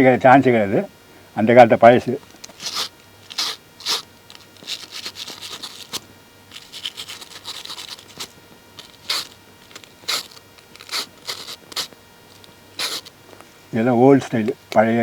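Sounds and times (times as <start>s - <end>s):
dry scratching and rubbing strokes: 2.5s - 13.1s.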